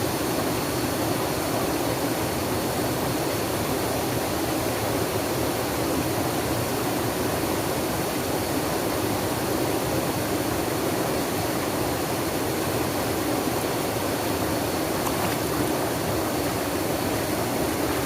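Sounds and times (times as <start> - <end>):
running water rushing: 9.8 - 18.0.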